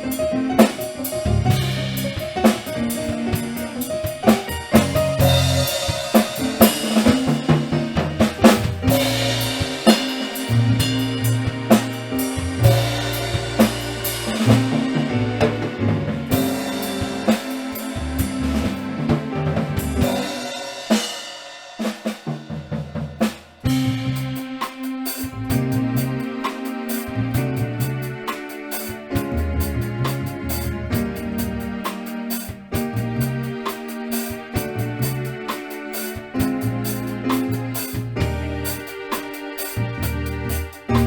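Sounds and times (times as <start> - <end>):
held bass notes: 0.0 - 20.5, 23.7 - 24.6, 25.3 - 26.4, 27.1 - 28.2, 29.1 - 31.8, 32.8 - 33.6, 34.6 - 35.4, 36.4 - 38.9, 39.8 - 41.0
band music: 0.0 - 41.0
drum kit: 0.0 - 41.0.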